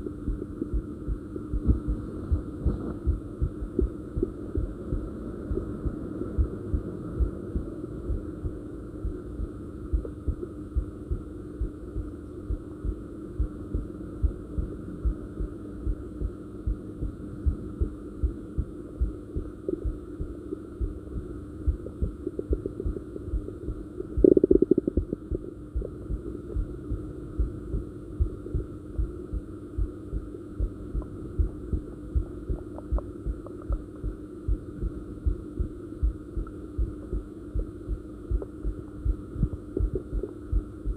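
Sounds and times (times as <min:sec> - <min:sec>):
constant hum: 0:00.0 - 0:40.9
heartbeat thumps: 0:00.0 - 0:40.9
stomach growling: 0:24.0 - 0:26.7.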